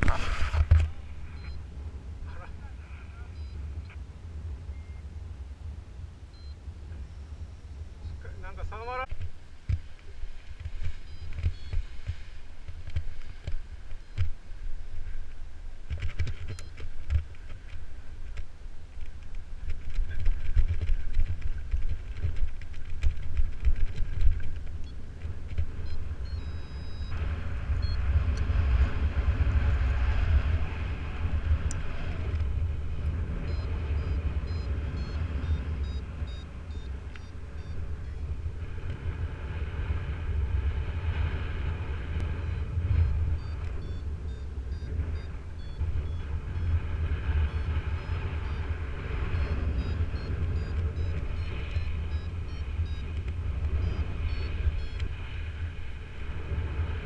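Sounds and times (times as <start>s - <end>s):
wind buffeting microphone: 0.0s - 57.0s
short high beeps: 1.3s - 1.7s, 3.0s - 4.0s, 4.7s - 5.0s, 11.0s - 11.8s, 25.8s - 27.2s, 33.4s - 38.2s, 43.0s - 46.8s, 47.5s - 48.7s, 49.3s - 53.1s, 53.8s - 55.0s.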